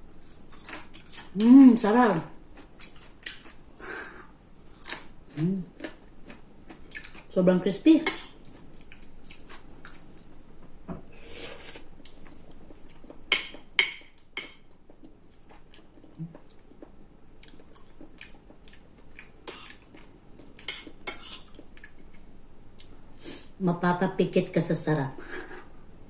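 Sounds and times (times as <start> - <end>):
chewing crispy dried fish: 2.5 - 3.6, 4.6 - 7.4, 8.1 - 10.8, 11.6 - 23.0.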